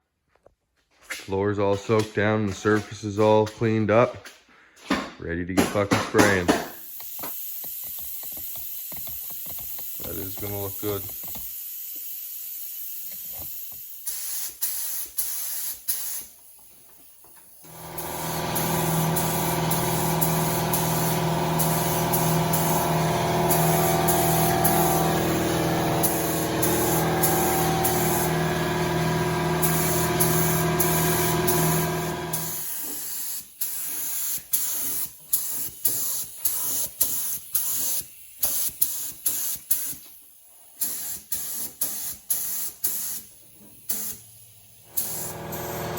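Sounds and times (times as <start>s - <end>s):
spray gun hissing in bursts: 6.6s - 45.9s
steady motor hum: 17.7s - 32.5s, 44.9s - 45.9s.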